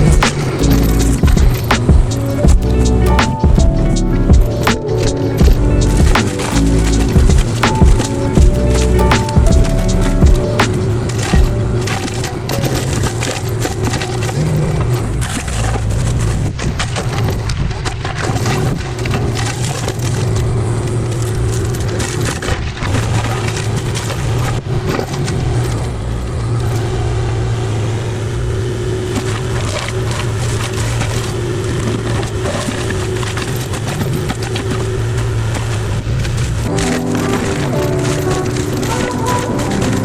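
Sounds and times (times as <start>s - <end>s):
mulcher engine drone: 0.0s - 14.4s
wood crackling and splintering: 9.7s - 27.0s, 28.7s - 40.0s.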